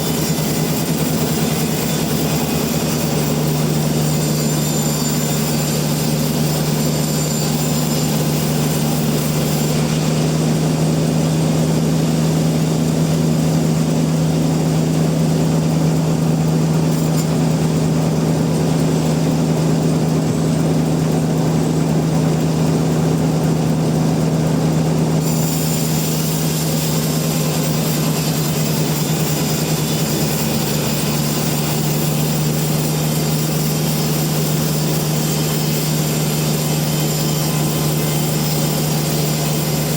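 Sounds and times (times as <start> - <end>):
machinery hiss: 0.0 - 13.6, 25.2 - 39.9
sawmill machinery low hum: 0.0 - 39.9.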